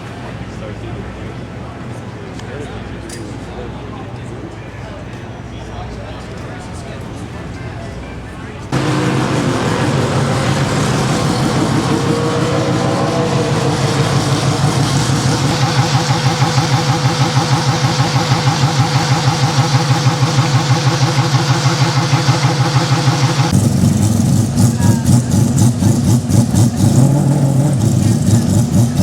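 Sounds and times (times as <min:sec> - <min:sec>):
car engine idling: 0:08.7 - 0:29.0.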